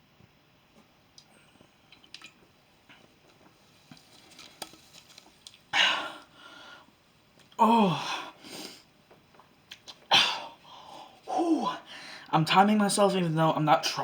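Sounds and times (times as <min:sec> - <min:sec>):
loud breath out: 0:05.8 - 0:06.9, 0:11.9 - 0:12.3.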